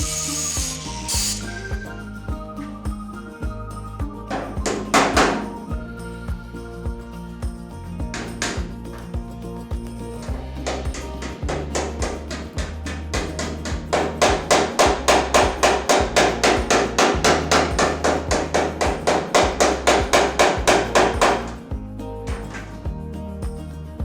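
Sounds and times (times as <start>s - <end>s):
hammer blows on sheet steel: 0.0s - 1.6s, 11.5s - 21.6s
background music: 0.0s - 24.0s.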